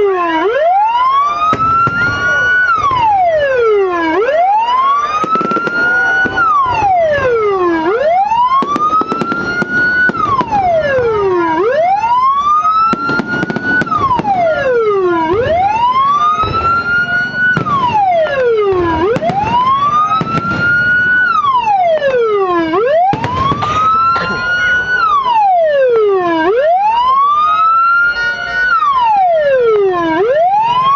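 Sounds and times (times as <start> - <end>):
electronic siren wailing: 0.0 - 30.9
sharp cracks: 5.2 - 6.7.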